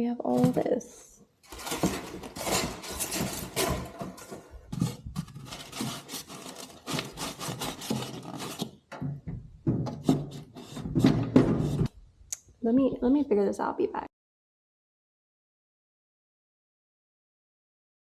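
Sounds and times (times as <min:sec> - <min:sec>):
cardboard scraping and rustling: 0:00.3 - 0:00.8, 0:01.4 - 0:08.8, 0:10.0 - 0:11.9.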